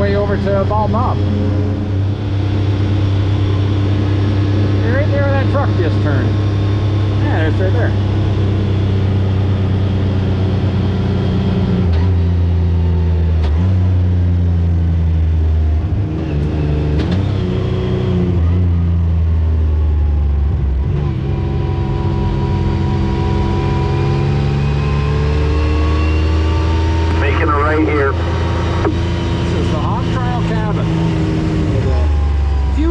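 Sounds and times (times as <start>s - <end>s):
utility vehicle engine running: 0.0s - 32.9s.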